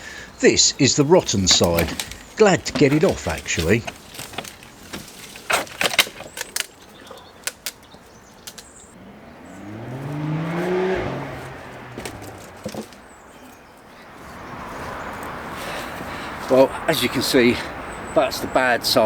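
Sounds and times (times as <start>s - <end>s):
wood knocking and clicking: 0.0s - 8.8s, 11.1s - 13.1s
vehicle engine passing: 8.3s - 19.0s.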